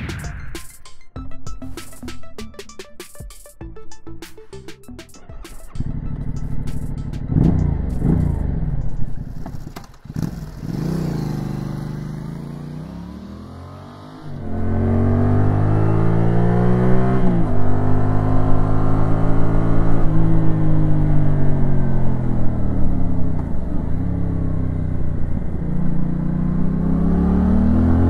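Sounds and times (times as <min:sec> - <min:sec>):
motorcycle engine revving: 0:05.7 - 0:28.0.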